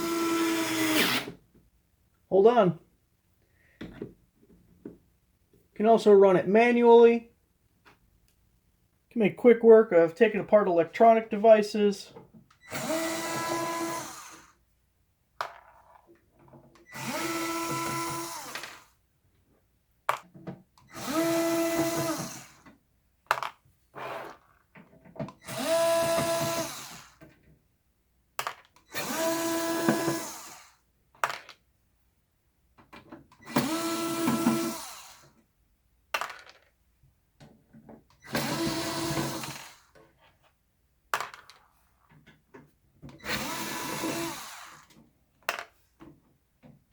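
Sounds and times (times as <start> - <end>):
cordless screwdriver motor whirring: 0.0 - 1.3, 16.9 - 18.8, 20.9 - 22.6, 25.4 - 27.2, 28.9 - 30.7, 33.4 - 35.3, 38.2 - 39.9, 43.2 - 44.9.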